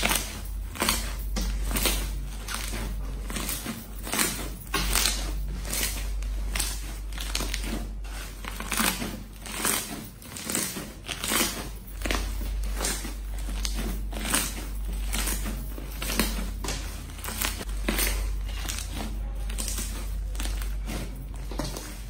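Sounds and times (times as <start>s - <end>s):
slime crackles and sticky pops: 8.4s - 22.0s.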